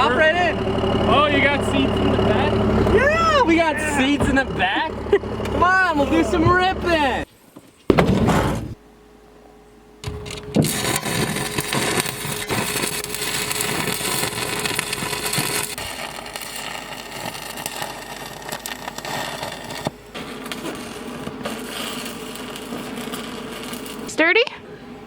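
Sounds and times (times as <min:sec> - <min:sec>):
truck driving over rough ground: 0:00.0 - 0:08.8
knocks and rattles: 0:07.9 - 0:08.8.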